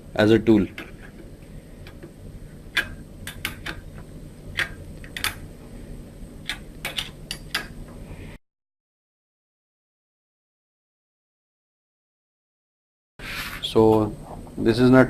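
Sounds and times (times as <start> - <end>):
metallic clicks of hand tools: 4.6 - 5.4, 6.4 - 7.8.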